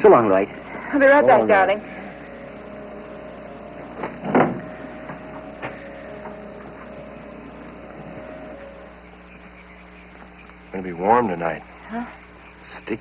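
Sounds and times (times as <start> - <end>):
steady faint hum: 0.0 - 13.0
door shutting with a thud: 3.9 - 6.4.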